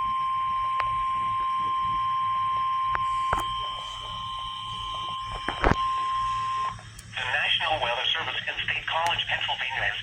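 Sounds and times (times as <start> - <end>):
steady high beep: 1.6 - 6.8.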